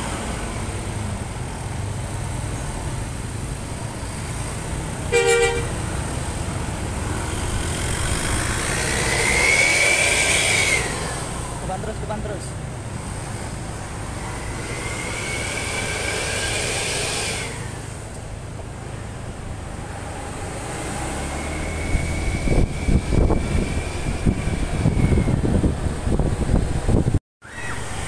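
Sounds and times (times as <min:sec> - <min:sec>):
road vehicle noise: 0:00.0 - 0:28.0
heavy low rumble with buffeting: 0:21.9 - 0:27.2.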